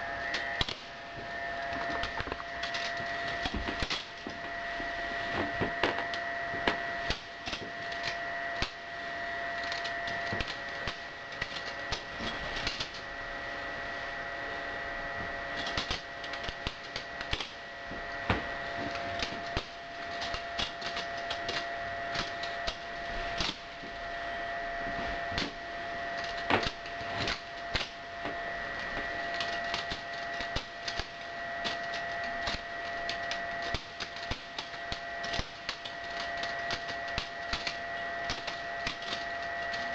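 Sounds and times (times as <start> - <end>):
steady high hum: 0.0 - 39.9.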